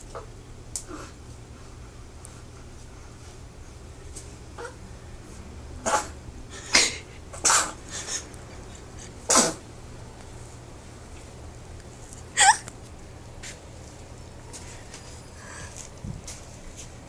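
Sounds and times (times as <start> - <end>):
baby sneezing: 5.8 - 6.2, 6.8 - 7.8, 9.3 - 9.6.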